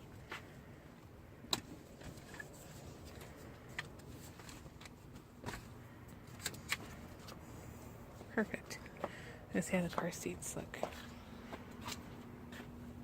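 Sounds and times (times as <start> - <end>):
low steady background noise: 0.0 - 13.0.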